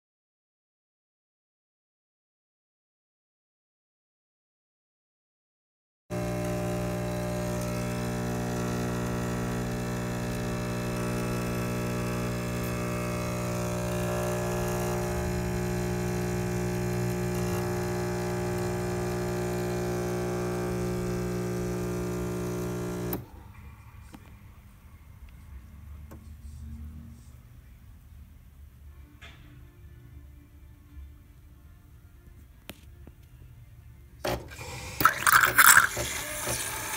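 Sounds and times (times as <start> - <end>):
coffee machine pump humming: 6.1 - 23.4, 34.3 - 36.9.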